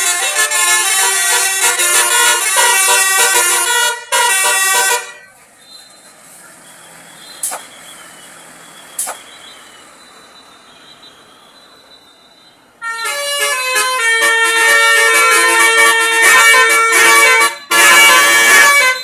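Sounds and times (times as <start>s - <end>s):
musical air horns melody: 0.0s - 5.3s, 12.8s - 19.0s
short sharp clicks: 7.4s - 7.8s, 8.9s - 9.3s.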